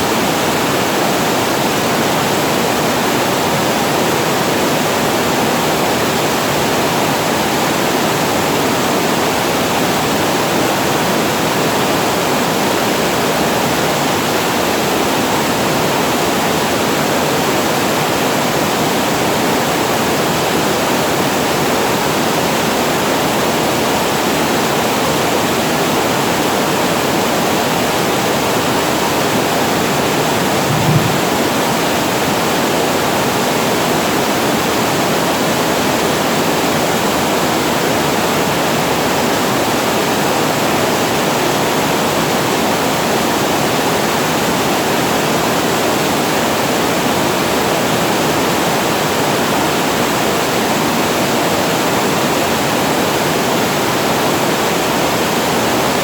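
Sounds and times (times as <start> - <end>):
low knock: 30.6 - 31.6.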